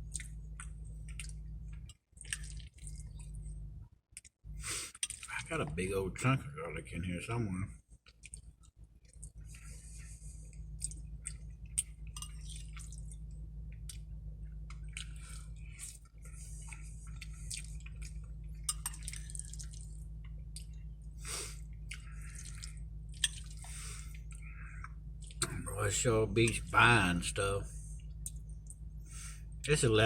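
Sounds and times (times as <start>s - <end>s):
wet chewing of spaghetti: 0.0s - 5.4s, 7.8s - 25.6s.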